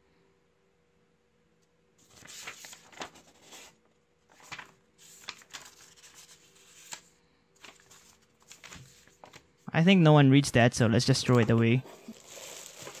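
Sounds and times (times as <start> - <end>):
paper rustling and crinkling: 2.0 - 9.6, 11.1 - 13.0.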